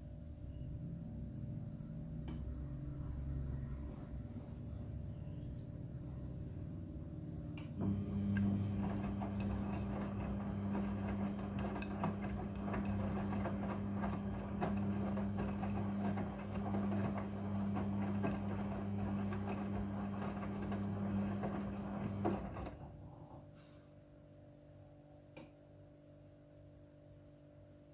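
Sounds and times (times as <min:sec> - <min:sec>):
washing machine motor hum: 0:00.9 - 0:23.5
wet laundry tumbling in drum: 0:08.5 - 0:22.7.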